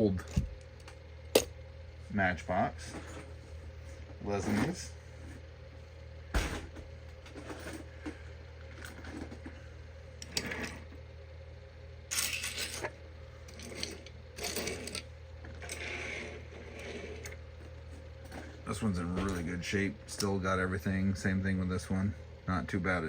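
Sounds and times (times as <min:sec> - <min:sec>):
metal toys clinking: 0:12.1 - 0:12.9.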